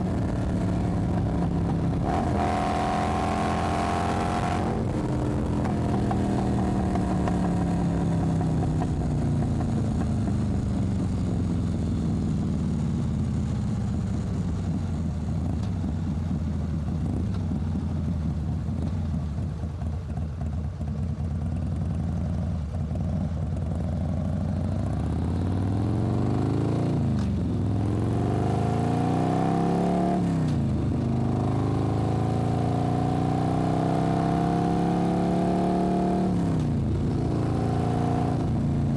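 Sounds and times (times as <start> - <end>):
motorcycle engine at low revs: 0.0 - 38.9.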